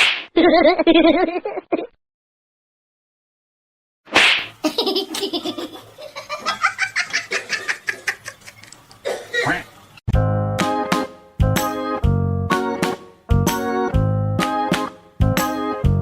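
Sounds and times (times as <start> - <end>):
person laughing hard: 0.4 - 1.9, 4.6 - 8.7.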